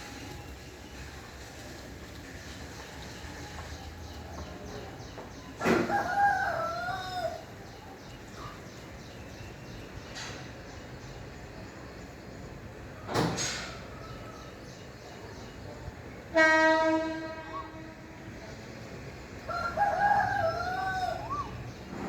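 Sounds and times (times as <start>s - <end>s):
rooster crowing: 5.7s - 7.5s, 19.5s - 21.6s
horn blast: 16.3s - 18.2s.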